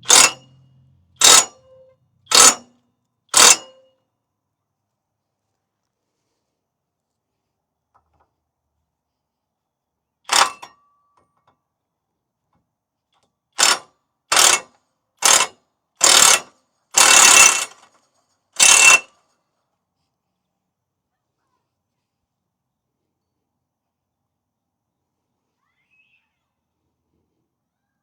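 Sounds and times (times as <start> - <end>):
hand tool rasping strokes: 1.2 - 1.6, 2.3 - 2.6, 3.4 - 3.7, 17.0 - 17.7, 18.6 - 19.0.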